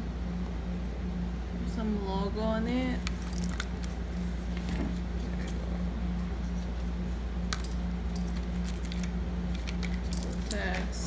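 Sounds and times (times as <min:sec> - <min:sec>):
steady low hum: 0:00.0 - 0:11.0
metal hardware clinking: 0:03.1 - 0:04.0, 0:07.5 - 0:11.0.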